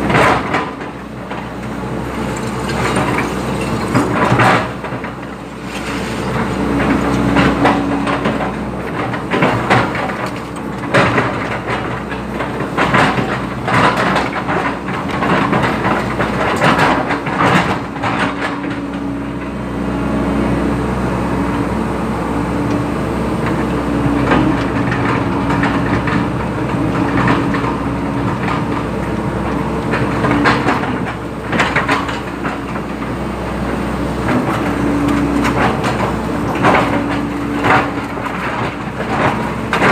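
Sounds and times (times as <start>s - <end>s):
diesel engine running: 0.0s - 39.9s
metal clanks and rattles: 2.2s - 18.9s, 34.2s - 39.9s.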